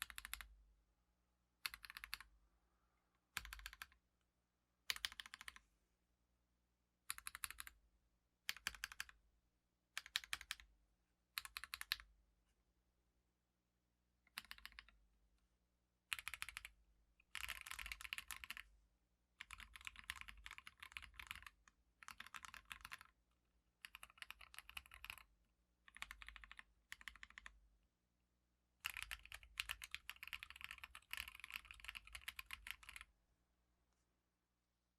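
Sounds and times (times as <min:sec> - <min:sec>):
mechanical keyboard typing: 0:00.0 - 0:00.5, 0:01.6 - 0:02.3, 0:03.4 - 0:04.0, 0:04.9 - 0:05.6, 0:07.1 - 0:07.8, 0:08.5 - 0:09.2, 0:10.0 - 0:10.7, 0:11.4 - 0:12.1, 0:14.3 - 0:15.0, 0:16.1 - 0:18.6, 0:19.4 - 0:23.2, 0:23.8 - 0:25.3, 0:25.9 - 0:27.6, 0:28.8 - 0:33.1.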